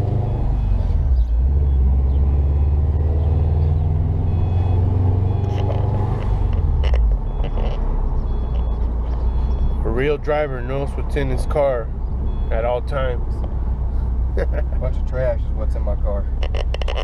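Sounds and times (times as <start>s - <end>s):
car engine low rumble: 0.0s - 17.0s.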